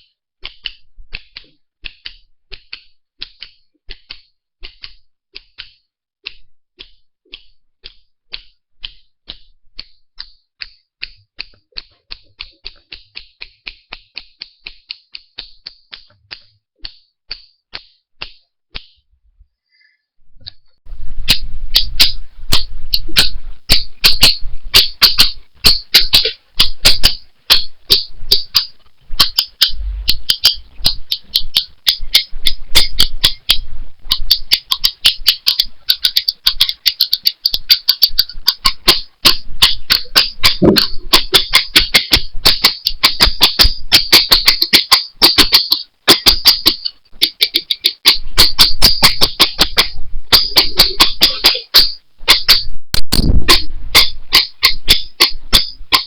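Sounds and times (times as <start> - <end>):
rapid sharp clicks: 0.4 - 19.0, 20.9 - 56.0
low hum: 29.7 - 31.1.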